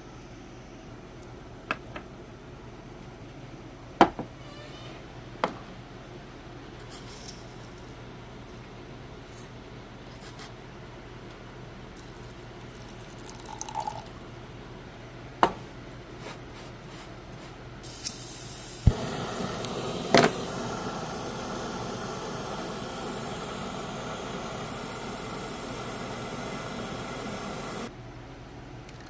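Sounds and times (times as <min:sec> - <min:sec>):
steady hissing rush: 0:17.8 - 0:27.9.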